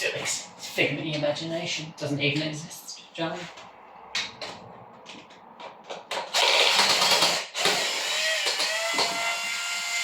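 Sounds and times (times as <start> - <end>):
cordless drill motor whine: 6.3 - 10.0.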